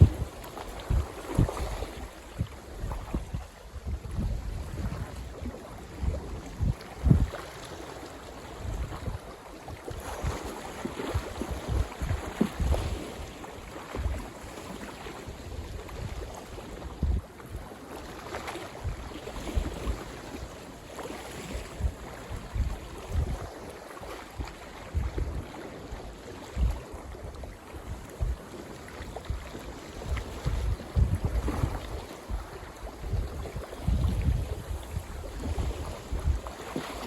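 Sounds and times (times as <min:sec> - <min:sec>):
gusty wind buffeting microphone: 0:00.0 - 0:07.6, 0:08.6 - 0:10.5, 0:11.1 - 0:14.3, 0:15.3 - 0:17.7, 0:21.4 - 0:23.7, 0:24.3 - 0:25.5, 0:26.5 - 0:36.5
lake water lapping at shore: 0:00.0 - 0:37.0.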